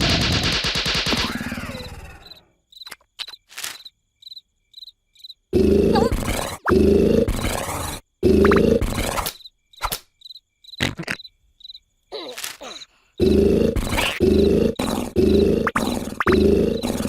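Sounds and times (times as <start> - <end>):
crickets chirping: 1.5 - 17.0
cartoon snoring: 5.5 - 9.3, 12.2 - 17.0.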